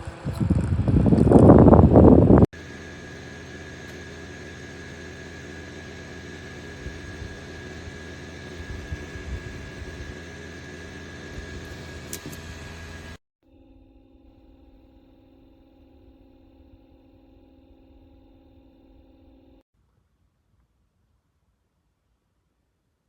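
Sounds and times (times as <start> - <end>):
desk fan whooshing and whining: 0.0 - 13.2.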